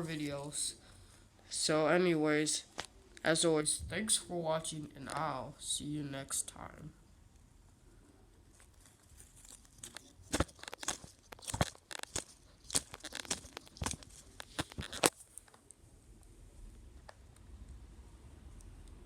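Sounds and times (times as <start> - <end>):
paper rustling and crinkling: 8.5 - 15.6.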